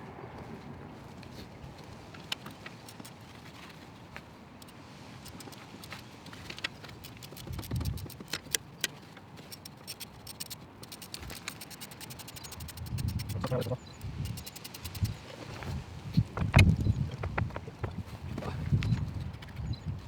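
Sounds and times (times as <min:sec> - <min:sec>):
hand ratchet clicking: 0:02.4 - 0:03.2, 0:04.6 - 0:15.2
metal tools clinking: 0:05.3 - 0:15.2.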